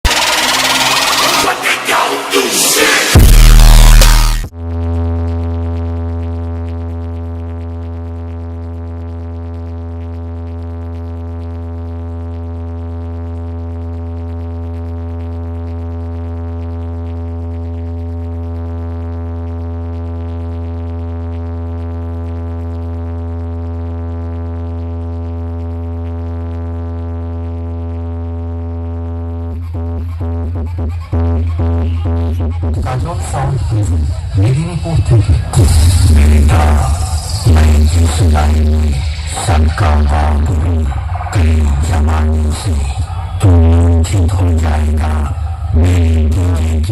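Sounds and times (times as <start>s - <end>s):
rapid pulsing beats: 0.0s - 4.5s, 29.6s - 46.9s
bass-heavy electronic tone: 0.0s - 46.9s.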